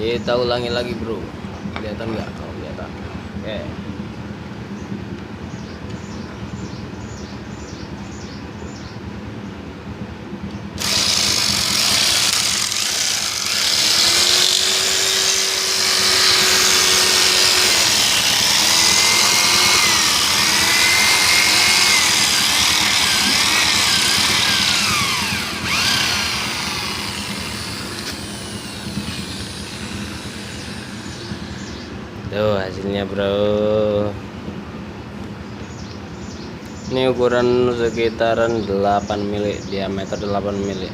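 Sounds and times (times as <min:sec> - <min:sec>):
drill scraping wooden stick: 0:10.8 - 0:31.9.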